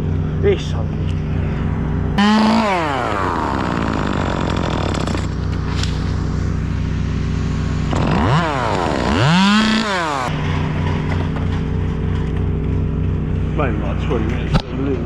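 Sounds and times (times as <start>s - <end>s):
low engine drone: 0.0s - 15.0s
chainsaw revving: 2.2s - 6.1s, 7.8s - 10.8s.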